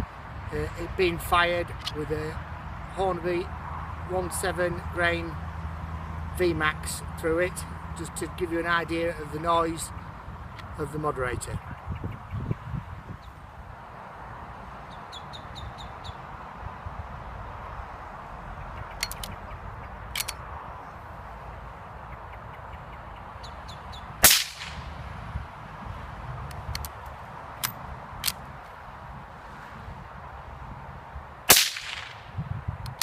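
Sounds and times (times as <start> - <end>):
steady outdoor hiss: 0.0 - 33.0
suppressed rifle shot: 24.2 - 24.9, 31.5 - 32.2.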